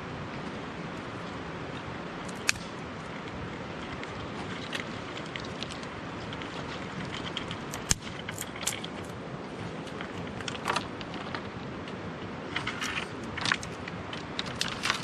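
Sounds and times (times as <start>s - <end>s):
mountain stream rushing: 0.0s - 15.0s.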